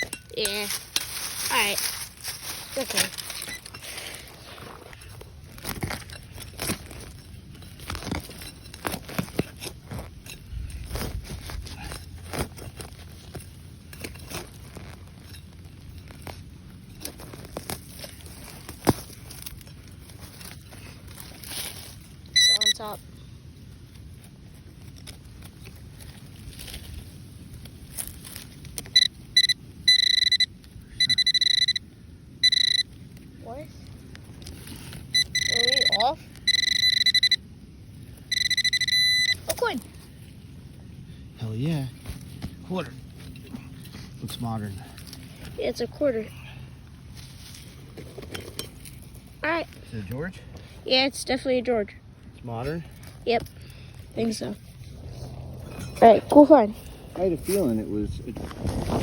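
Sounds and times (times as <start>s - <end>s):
metal detector beeps: 0.0s - 0.7s, 22.2s - 23.0s, 28.9s - 33.0s, 35.0s - 37.5s, 38.2s - 39.8s
metal detector steady tones: 0.0s - 11.3s, 19.3s - 25.5s, 28.7s - 33.6s, 34.2s - 40.4s
crunching of dry ground litter: 0.0s - 50.8s, 52.3s - 59.0s.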